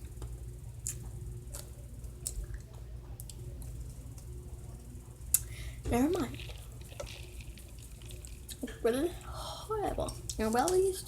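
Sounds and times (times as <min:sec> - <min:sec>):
low steady hum: 0:00.0 - 0:11.0
soft wet squishing: 0:05.3 - 0:10.9.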